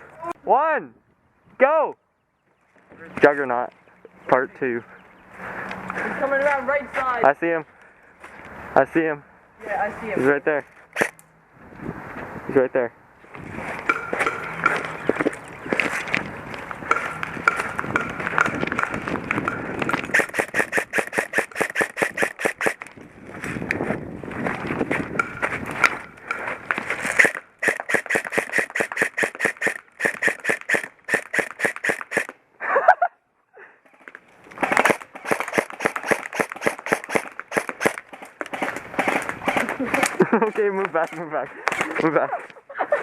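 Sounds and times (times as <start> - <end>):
airsoft guns rapid firing: 18.4 - 22.8, 27.1 - 32.3, 34.6 - 40.2.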